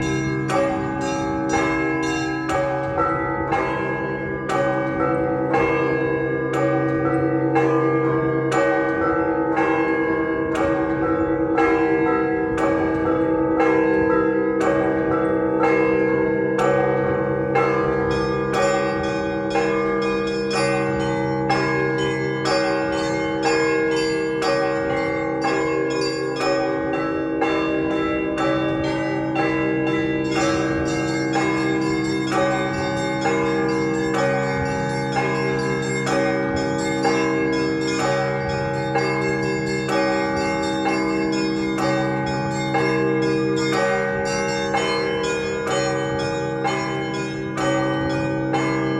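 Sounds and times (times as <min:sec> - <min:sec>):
deep bells humming: 0:00.0 - 0:48.9
small bells struck rapidly: 0:28.4 - 0:48.9.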